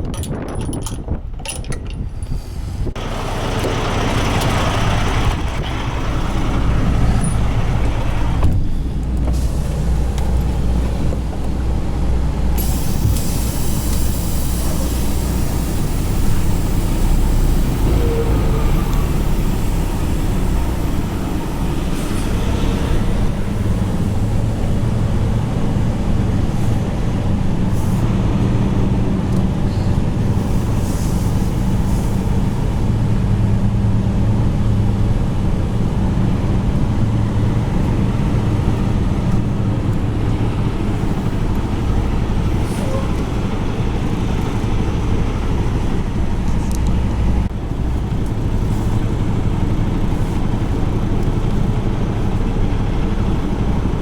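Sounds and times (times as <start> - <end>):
diesel truck engine running: 2.2 - 54.0
rushing hiss: 12.6 - 22.3.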